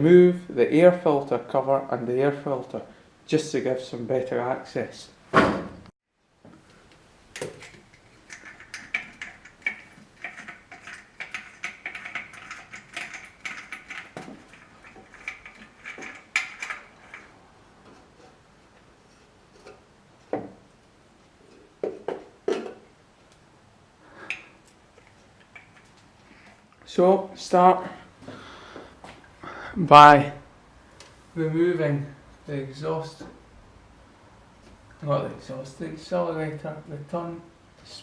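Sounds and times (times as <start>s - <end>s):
light metal clinking and scraping: 7.4s - 18.4s.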